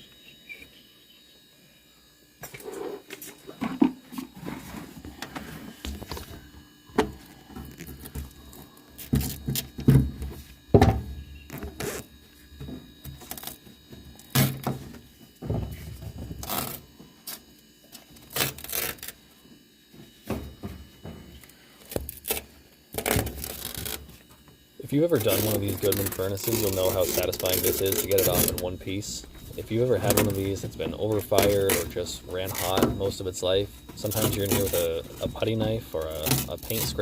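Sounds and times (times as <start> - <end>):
knocks and thunks on sheet metal: 9.2 - 11.2.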